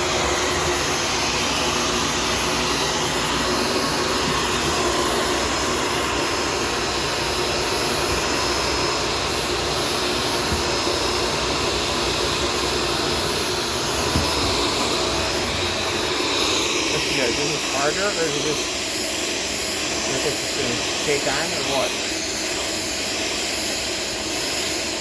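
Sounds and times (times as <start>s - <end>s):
vacuum cleaner running: 0.0s - 25.0s
knock: 14.1s - 14.6s.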